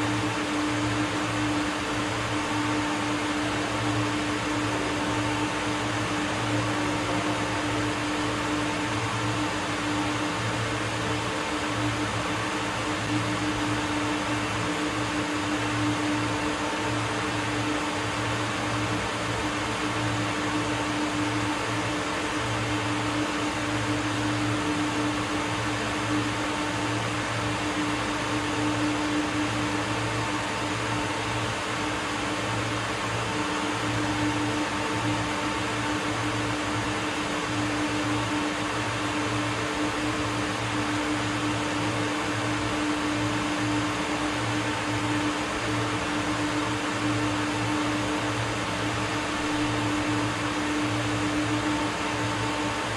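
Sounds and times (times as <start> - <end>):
airy ventilation noise: 0.0 - 52.9.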